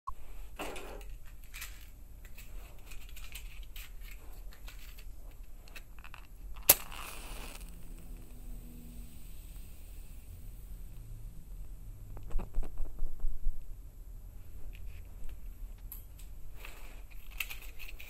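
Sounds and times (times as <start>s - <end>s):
handling clicks and rustles: 0.6s - 6.9s
short hiss: 6.7s - 10.8s.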